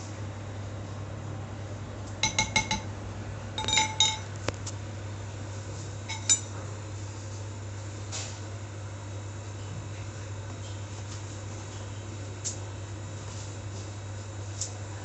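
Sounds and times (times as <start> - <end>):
steady low hum: 0.0 - 15.0
cutlery and dishes clinking: 6.1 - 6.5.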